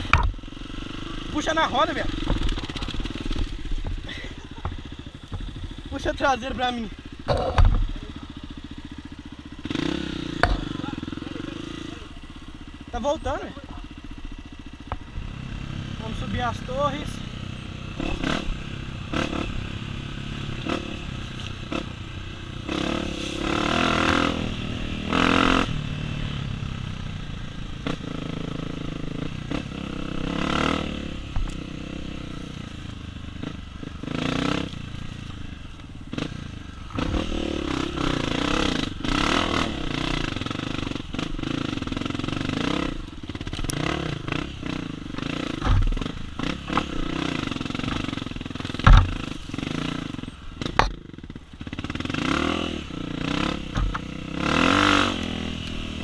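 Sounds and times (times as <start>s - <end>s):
dirt bike engine revving: 0.0s - 56.0s
knocks and rattles: 47.8s - 49.3s.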